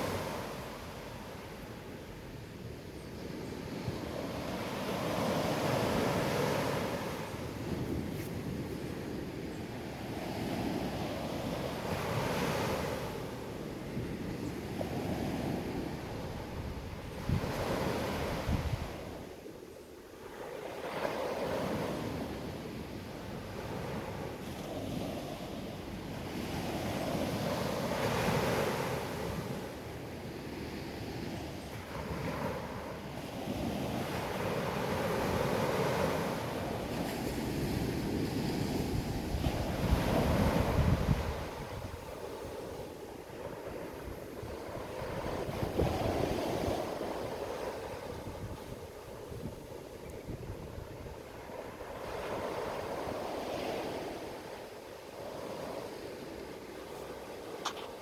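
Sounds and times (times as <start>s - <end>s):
waves washing in: 0.0s - 1.9s, 4.0s - 14.2s, 20.2s - 58.0s.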